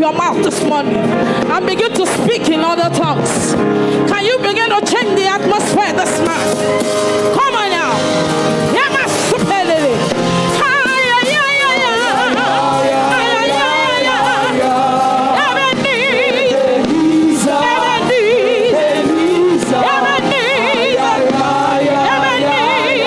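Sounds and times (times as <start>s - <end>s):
instrumental backing: 0.0s - 23.0s
person singing with vibrato: 8.5s - 23.0s.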